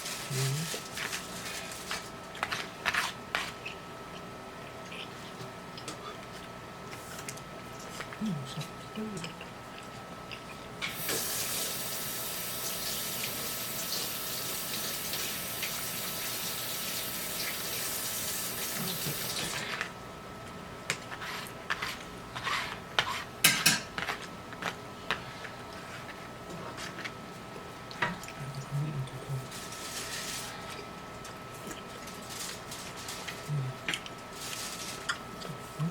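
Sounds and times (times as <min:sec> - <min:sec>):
water running from a tap: 0:10.9 - 0:19.6.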